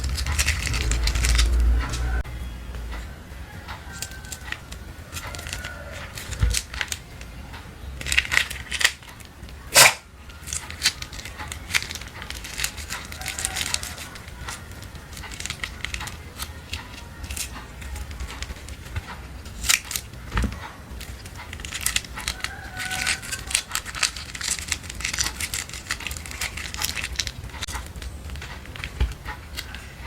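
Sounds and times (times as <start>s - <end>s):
plastic crinkling and tapping: 0.0s - 2.2s, 2.9s - 30.0s
sharp click: 9.7s - 10.1s.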